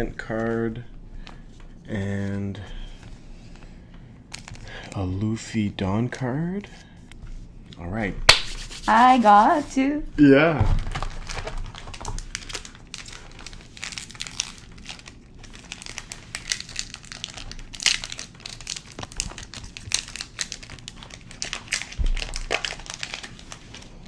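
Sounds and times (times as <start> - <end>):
foil wrapper crinkling: 4.3 - 5.1, 10.8 - 24.0.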